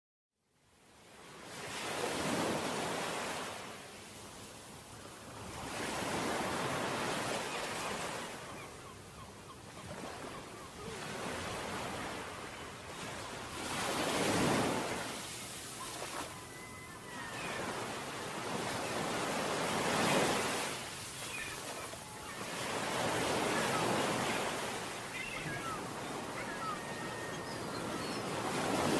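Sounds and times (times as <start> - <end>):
ocean waves breaking on beach: 0.8 - 28.9.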